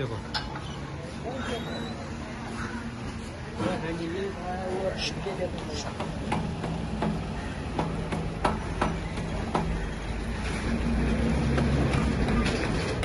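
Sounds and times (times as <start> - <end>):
sharp knocks: 5.9 - 9.9.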